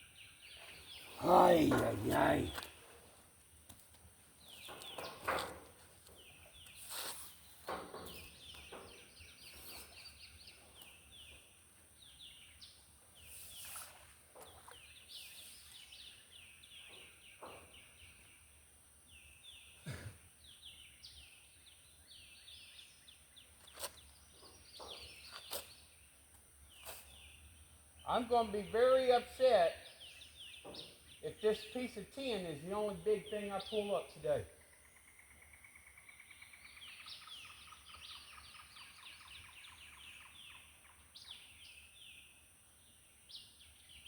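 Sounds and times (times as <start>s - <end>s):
bird calling: 0.0s - 2.8s.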